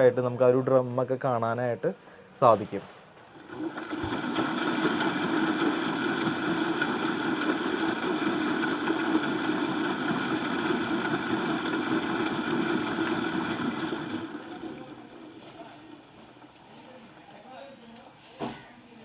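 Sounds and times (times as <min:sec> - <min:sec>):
washing machine drum whirring: 0:03.2 - 0:17.5.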